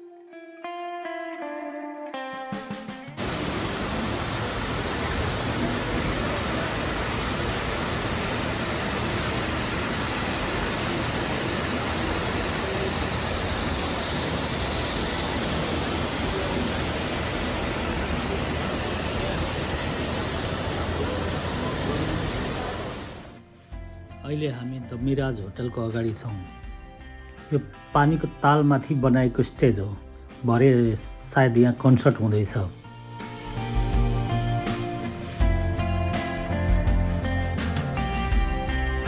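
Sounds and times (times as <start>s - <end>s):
waterfall rushing: 3.2s - 23.4s.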